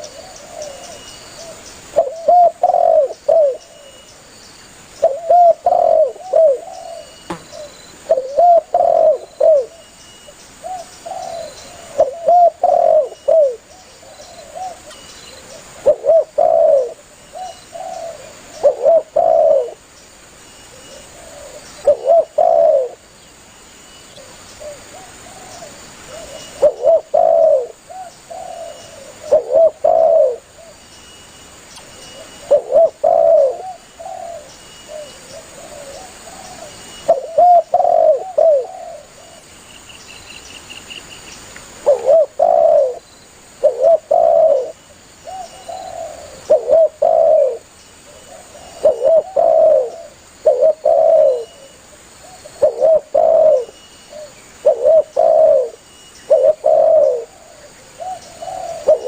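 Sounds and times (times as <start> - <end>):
dove cooing: 0.0 - 3.8, 5.0 - 9.8, 10.6 - 19.8, 20.7 - 23.0, 24.2 - 30.8, 32.2 - 39.4, 41.8 - 43.0, 43.6 - 59.0.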